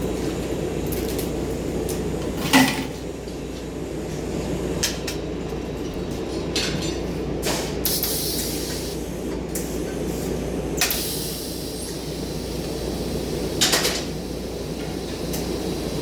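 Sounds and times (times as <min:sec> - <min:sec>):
arc welding crackling hiss: 0:07.9 - 0:16.0.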